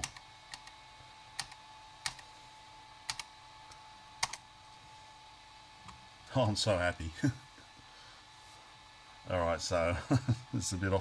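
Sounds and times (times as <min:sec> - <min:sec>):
keyboard keystroke clicks: 0:03.1 - 0:03.3, 0:04.2 - 0:04.4.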